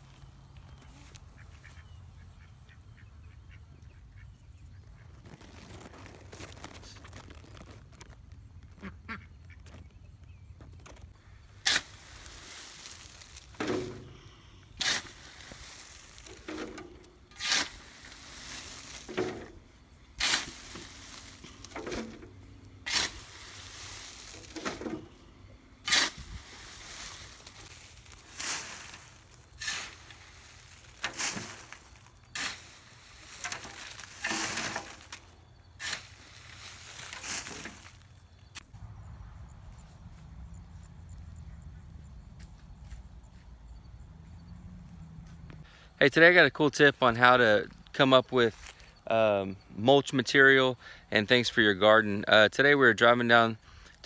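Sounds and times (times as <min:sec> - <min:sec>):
ducks quacking: 0:01.3 - 0:04.3, 0:08.8 - 0:09.6.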